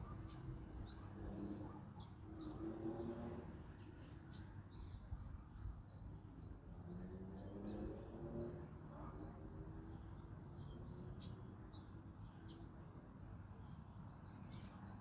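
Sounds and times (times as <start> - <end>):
songbirds chirping: 0.0 - 15.0.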